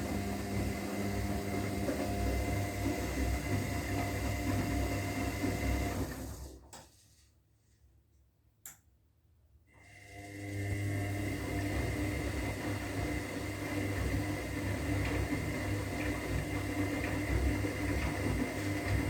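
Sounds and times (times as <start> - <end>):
washing machine motor humming: 0.0 - 6.6, 10.0 - 19.0.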